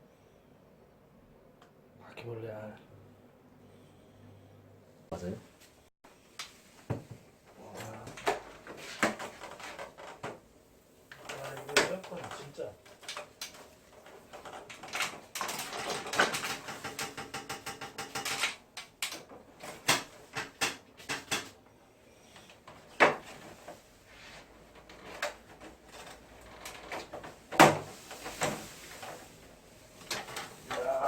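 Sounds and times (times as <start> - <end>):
plastic parts rattling: 11.1 - 21.5.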